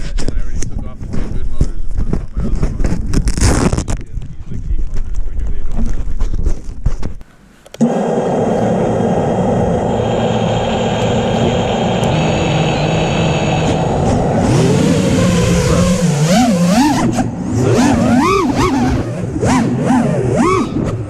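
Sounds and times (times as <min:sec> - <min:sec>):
quadcopter propellers whirring: 0:07.8 - 0:21.0.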